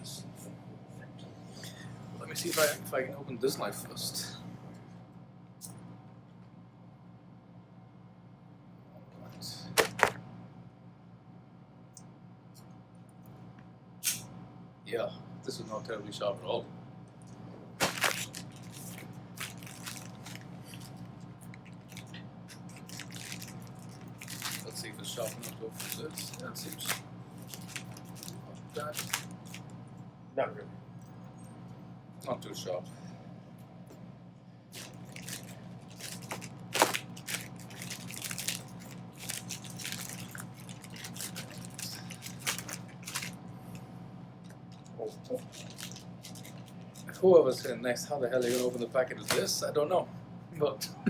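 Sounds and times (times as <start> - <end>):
knife snipping packaging: 9.7 - 10.2, 17.8 - 20.9, 21.9 - 29.6, 34.8 - 43.4.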